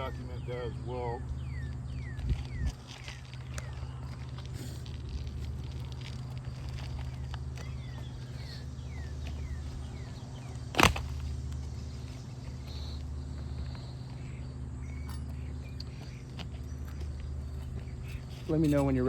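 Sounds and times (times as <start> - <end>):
low background rumble: 0.0 - 19.0.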